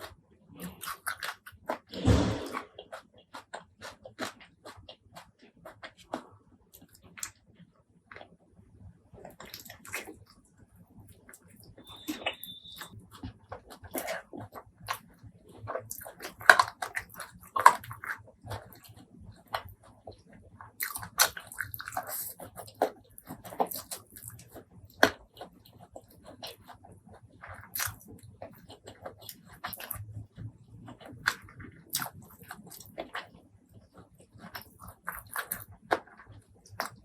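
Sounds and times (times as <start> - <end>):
wet clicks and crunches: 0.0 - 2.1, 9.2 - 10.5, 11.1 - 37.0
chewing and biting food: 0.0 - 8.4, 9.2 - 37.0.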